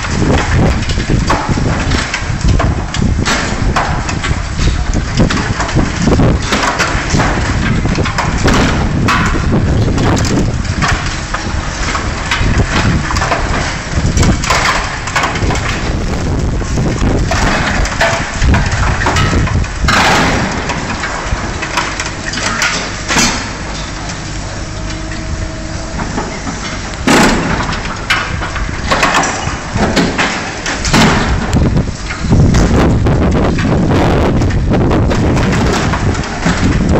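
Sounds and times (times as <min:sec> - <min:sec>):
sharp metal knocks: 0:00.0 - 0:24.1
diesel engine running: 0:00.0 - 0:36.9
metal and rubble crunching: 0:00.0 - 0:36.9.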